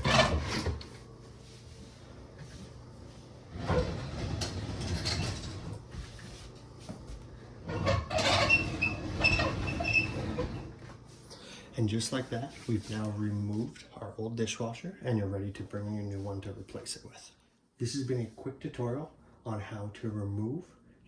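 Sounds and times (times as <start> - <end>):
dishwasher scraping and rumbling: 0.0 - 1.1, 3.3 - 6.3, 7.5 - 11.1.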